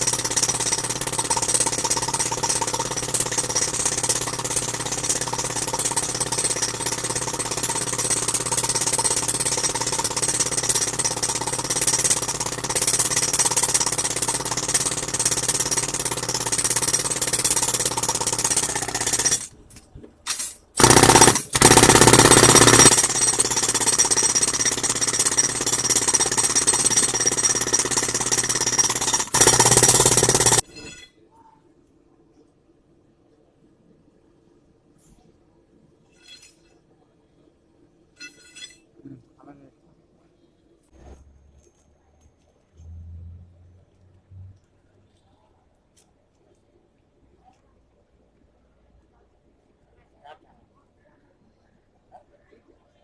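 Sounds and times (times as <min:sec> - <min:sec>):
rock drill boring into rock: 0:20.8 - 0:30.6.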